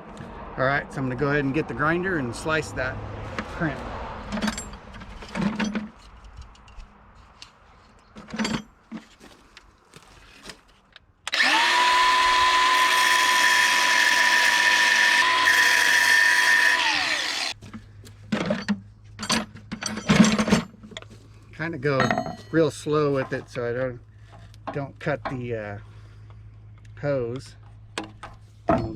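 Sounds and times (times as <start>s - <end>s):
grinder whining: 11.3s - 17.6s.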